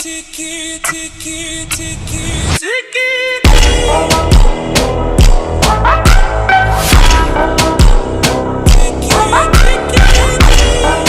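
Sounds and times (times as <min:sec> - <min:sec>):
electronic music with kick drum: 0:03.5 - 0:11.0.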